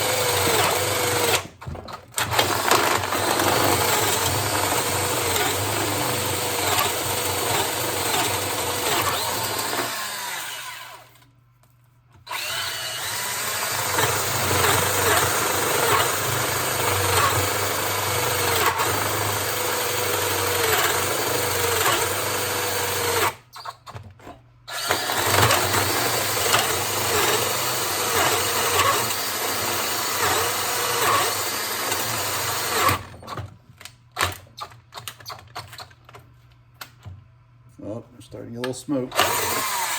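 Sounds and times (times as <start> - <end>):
cordless drill boring into wood: 0.0 - 1.5, 2.2 - 11.3, 12.3 - 23.4, 24.7 - 33.2, 39.1 - 39.9.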